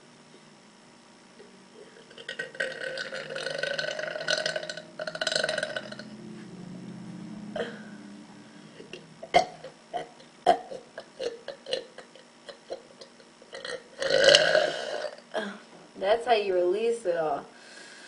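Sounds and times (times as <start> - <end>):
woman burping: 1.8 - 6.2, 7.5 - 8.0, 8.8 - 15.7.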